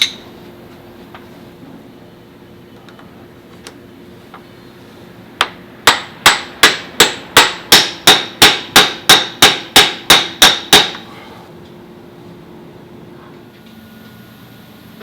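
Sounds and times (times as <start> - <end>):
hammer striking metal: 5.4 - 11.0.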